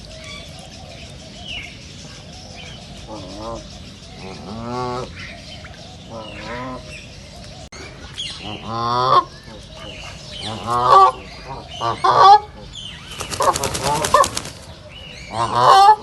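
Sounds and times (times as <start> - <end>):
ducks calling: 7.8 - 16.0.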